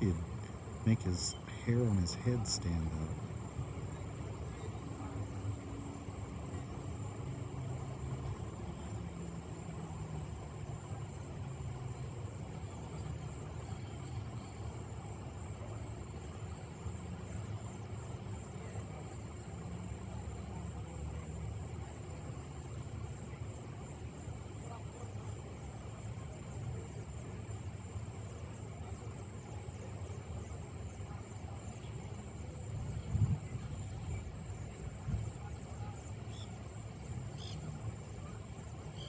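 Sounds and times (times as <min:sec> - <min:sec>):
low background rumble: 0:00.0 - 0:07.2.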